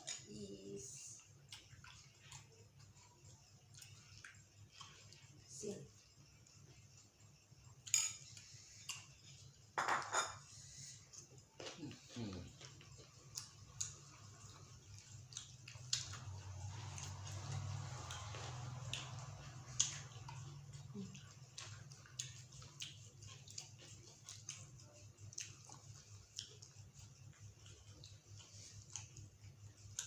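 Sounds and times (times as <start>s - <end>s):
person chewing: 1.4s - 5.2s, 11.1s - 30.0s.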